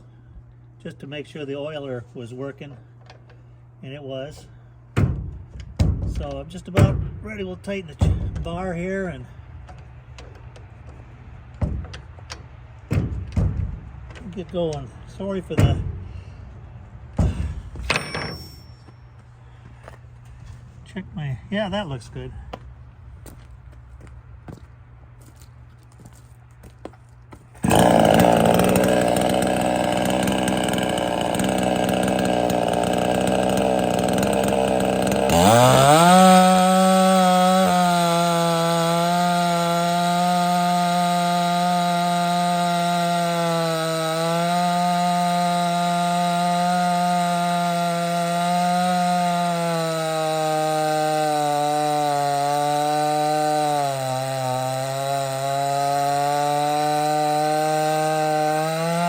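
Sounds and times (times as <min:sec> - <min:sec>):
chainsaw cutting wood: 0:17.2 - 0:18.7, 0:27.6 - 0:59.0.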